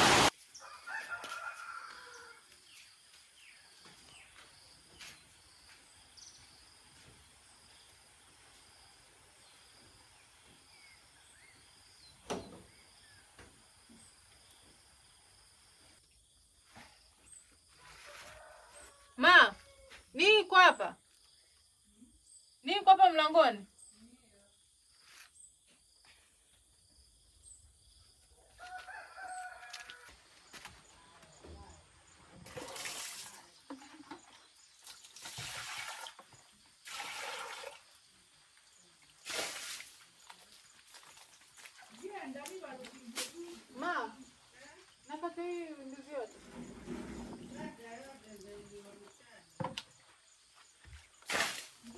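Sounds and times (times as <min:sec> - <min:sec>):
water splashing: 0:00.0 - 0:00.3, 0:34.8 - 0:38.0, 0:39.1 - 0:42.5
crickets chirping: 0:03.0 - 0:19.0, 0:20.3 - 0:32.2, 0:34.2 - 0:51.2.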